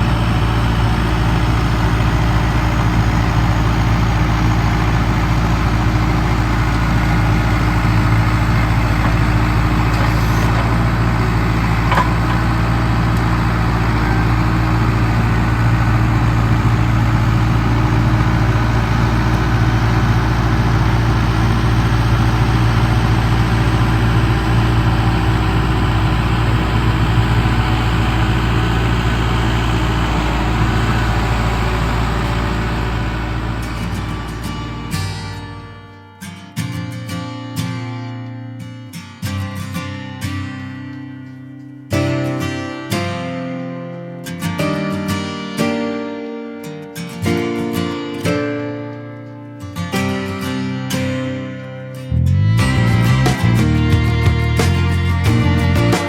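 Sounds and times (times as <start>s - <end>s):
tractor diesel engine running: 0.0s - 36.1s, 52.1s - 56.0s.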